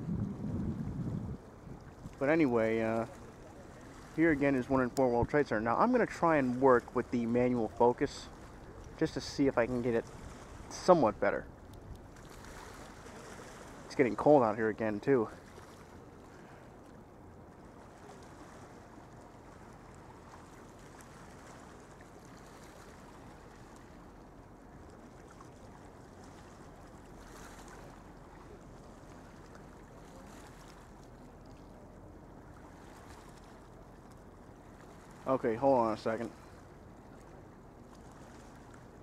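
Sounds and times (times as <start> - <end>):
low rumble: 0.0 - 2.1.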